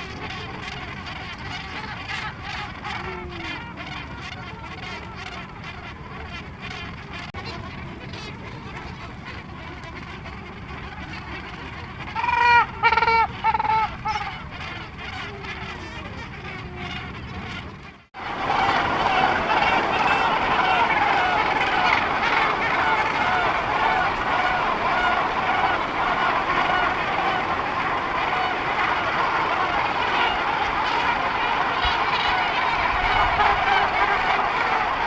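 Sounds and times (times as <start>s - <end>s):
gannet colony honking calls: 0.0s - 35.0s
loud nearby bird calls: 9.4s - 35.0s.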